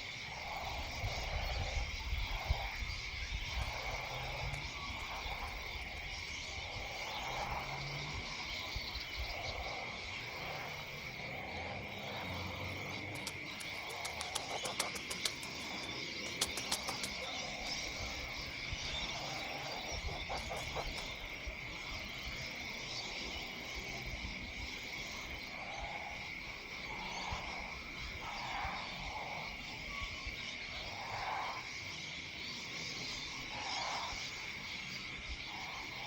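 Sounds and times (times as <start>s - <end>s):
frogs croaking: 0.0s - 36.0s
high-pitched insect trill: 0.0s - 36.0s
sharp clicks: 13.0s - 17.4s.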